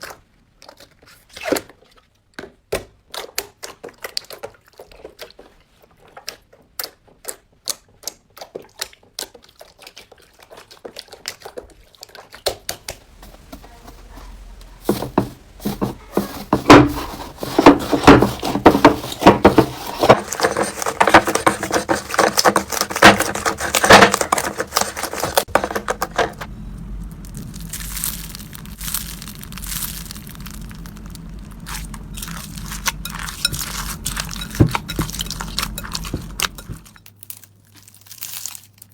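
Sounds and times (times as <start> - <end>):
slime crackling and popping: 26.8 - 36.1, 37.0 - 38.9.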